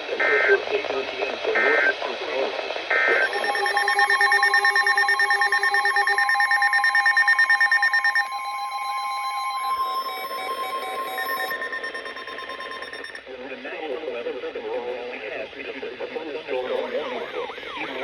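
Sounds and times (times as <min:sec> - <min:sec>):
pulsing electronic alert tones: 0:03.1 - 0:13.2.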